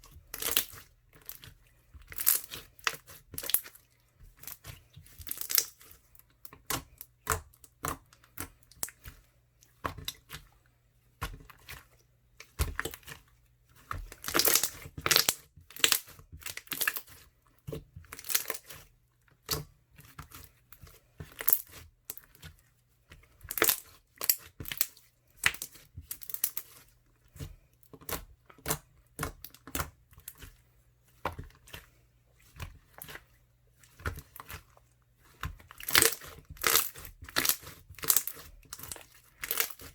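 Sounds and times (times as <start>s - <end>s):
slime crackling and popping: 14.2s - 17.1s, 35.7s - 39.9s.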